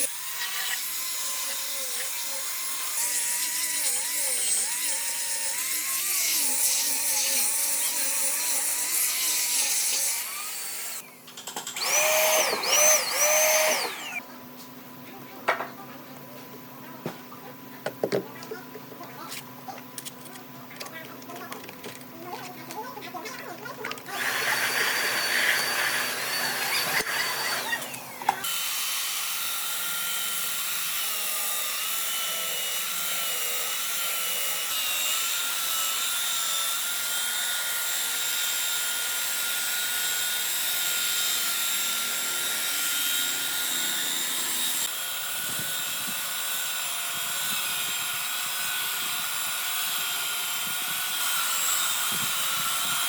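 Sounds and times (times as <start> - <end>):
power tool grinding wood: 0.0 - 11.1, 11.7 - 14.2, 24.1 - 53.0
power tool motor whine: 11.7 - 14.2, 24.1 - 53.0.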